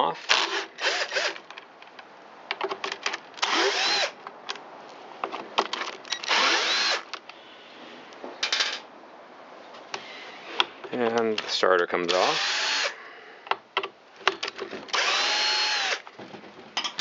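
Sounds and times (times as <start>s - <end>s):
handling clicks and knocks: 1.4s - 3.4s, 4.2s - 6.3s, 10.6s - 11.6s, 13.5s - 14.9s, 16.0s - 17.0s
power drill whine: 3.4s - 4.1s, 6.3s - 7.0s, 12.3s - 12.9s, 14.9s - 16.0s.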